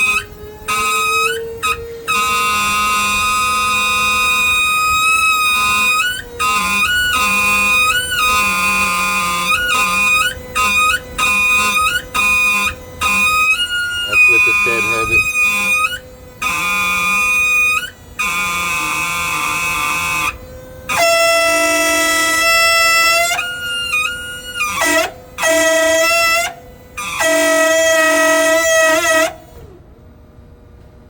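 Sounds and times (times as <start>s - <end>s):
horn-like screeching: 0.0s - 20.0s.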